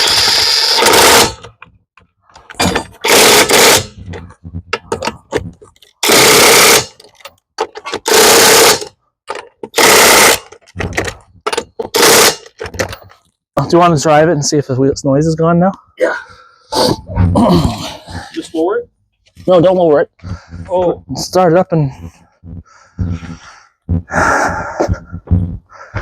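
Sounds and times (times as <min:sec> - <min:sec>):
impact wrench bursts: 0:00.0 - 0:01.6, 0:02.6 - 0:04.2, 0:06.0 - 0:07.0, 0:07.9 - 0:08.9, 0:09.6 - 0:12.6.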